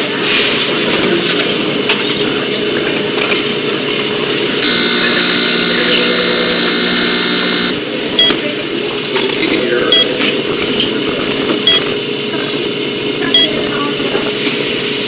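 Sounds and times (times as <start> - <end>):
steady background hum: 0.0 - 15.0
electric buzzer: 4.6 - 7.9
short high beeps: 4.6 - 8.4.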